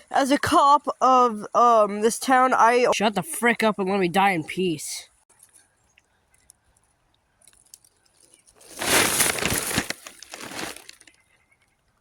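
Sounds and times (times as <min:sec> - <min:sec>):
loud crunching crackling rustle: 0:06.3 - 0:11.2.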